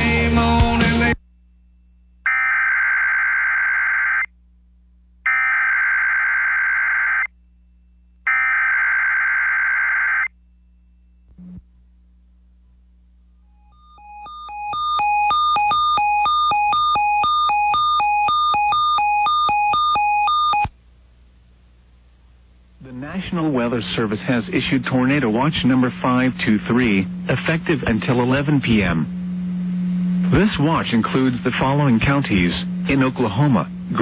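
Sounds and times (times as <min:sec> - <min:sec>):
warbling digital data tones: 0:13.5 - 0:20.7
fast repeating electronic beeps: 0:13.7 - 0:20.7.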